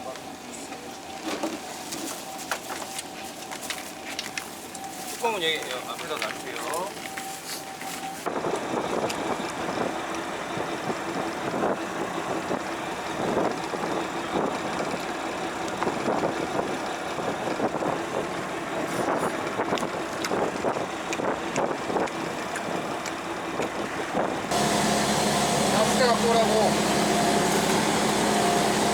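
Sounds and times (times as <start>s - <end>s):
water noise: 0.2s - 28.9s
boat engine running: 4.6s - 28.9s
wind noise: 7.7s - 24.6s.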